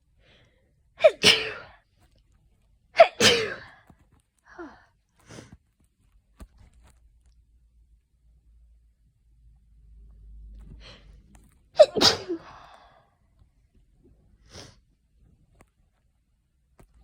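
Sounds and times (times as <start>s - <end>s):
person sneezing: 1.0s - 1.8s, 3.0s - 3.8s, 11.8s - 12.8s.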